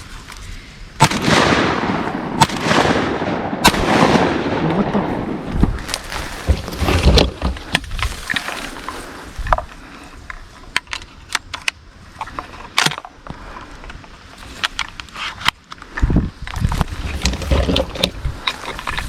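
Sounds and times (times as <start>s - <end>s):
gear handling clicks and rustling: 5.9s - 19.0s.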